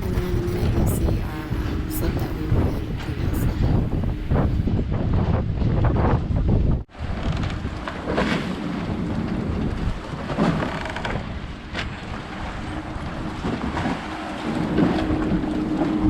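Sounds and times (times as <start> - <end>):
low steady hum: 0.0 - 4.7
water noise: 0.0 - 4.8, 6.8 - 16.0
wind buffeting microphone: 0.0 - 16.0.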